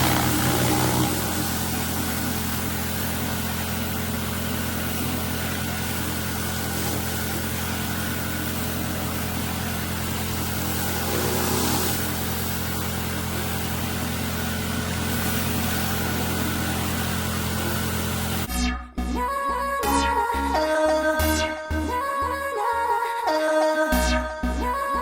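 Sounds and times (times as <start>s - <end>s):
high-pressure water jet hissing: 0.0s - 18.5s
pressure washer engine and pump: 0.0s - 18.5s.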